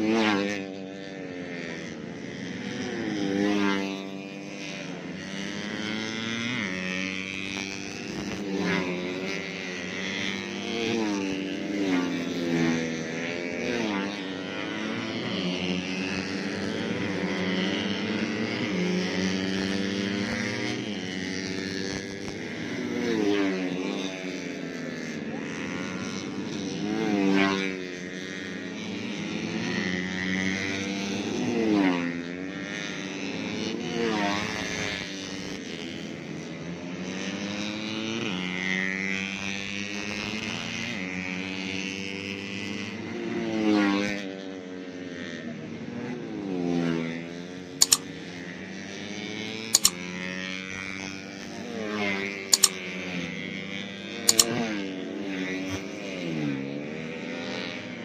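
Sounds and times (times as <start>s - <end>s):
racing motorcycles passing at high revs: 0.0s - 58.0s
sharp clicks: 47.8s - 48.0s, 49.8s - 50.0s, 52.5s - 52.8s, 54.3s - 54.6s.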